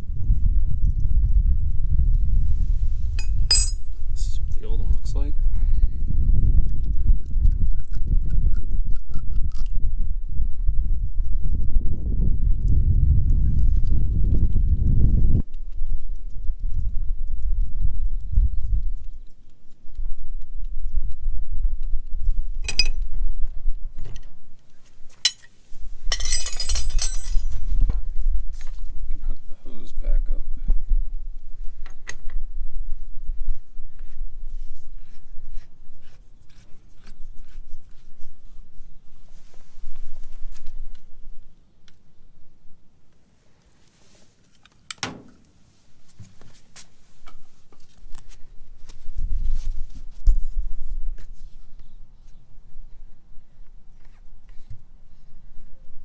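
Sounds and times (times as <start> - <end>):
low rumbling: 0.0 - 4.6, 25.7 - 28.4
constant low rumble: 0.0 - 56.0
metal tools clinking: 3.2 - 4.0, 22.7 - 23.0, 25.2 - 27.6
hands handling hardware clicks: 25.3 - 27.6.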